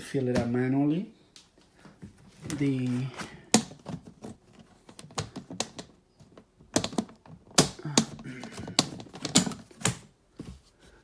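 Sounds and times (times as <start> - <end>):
hard objects clicking and knocking: 3.2 - 10.6.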